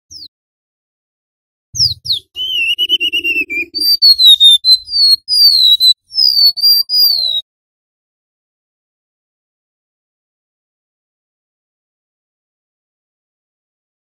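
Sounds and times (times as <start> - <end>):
bird singing high whistled notes: 0.1 - 0.3, 1.8 - 7.5.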